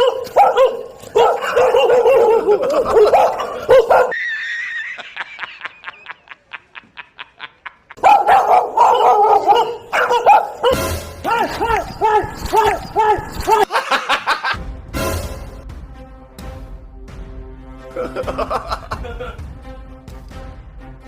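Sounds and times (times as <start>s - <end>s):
dog barking and yelping: 0.0s - 4.3s, 8.0s - 13.7s.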